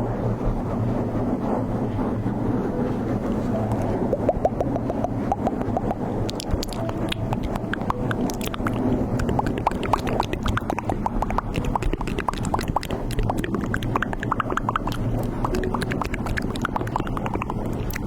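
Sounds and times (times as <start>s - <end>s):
steady low rumble: 0.0s - 18.0s
wet popping and crackling: 3.8s - 18.0s.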